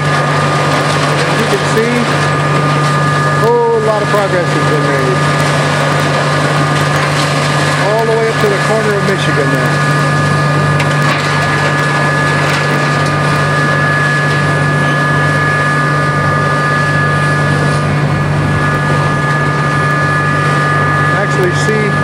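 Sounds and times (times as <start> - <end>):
engine drone with high whine: 0.0 - 22.0.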